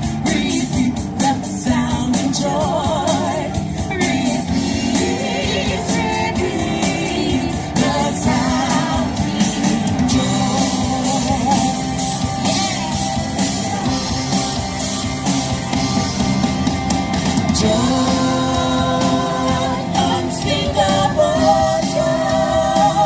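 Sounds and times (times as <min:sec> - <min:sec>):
song with singing and full band: 0:00.0 - 0:23.0.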